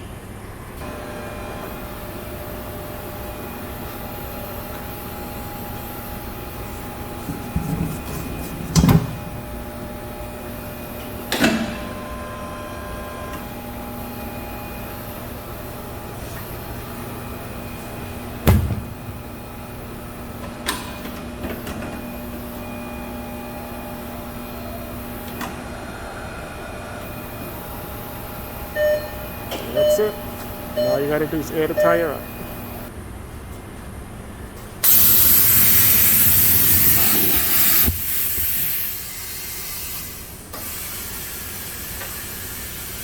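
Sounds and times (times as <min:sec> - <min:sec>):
steady shop hum: 0:00.0 - 0:43.0
tire changer machine clunks: 0:02.9 - 0:15.0, 0:15.8 - 0:32.8.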